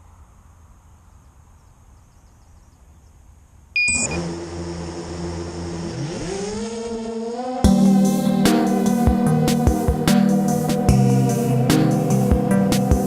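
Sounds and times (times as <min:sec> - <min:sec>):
faint outdoor background: 0:00.0 - 0:13.0
short beep: 0:03.8 - 0:04.2
quadcopter motors whining: 0:03.8 - 0:11.6.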